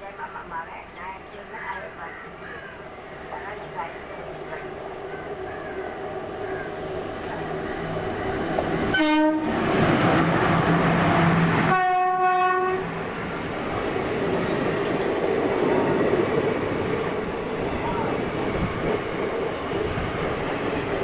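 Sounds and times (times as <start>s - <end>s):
passing train rumble: 0.0s - 21.0s
locomotive horn blowing: 8.8s - 9.8s, 11.6s - 13.0s.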